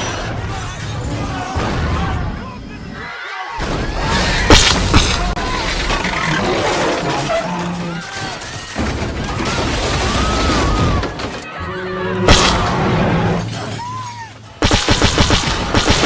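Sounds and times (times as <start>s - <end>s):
shattering and crashing din: 3.6s - 11.5s, 12.3s - 16.0s
sharp crash: 12.3s - 14.0s.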